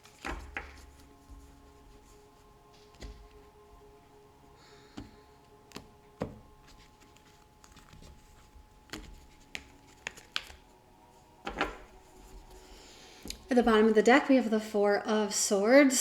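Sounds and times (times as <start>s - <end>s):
cards tapping and snapping: 0.0s - 2.0s, 2.7s - 3.8s, 4.8s - 10.8s, 11.4s - 13.5s
faint steady drone: 0.0s - 16.0s.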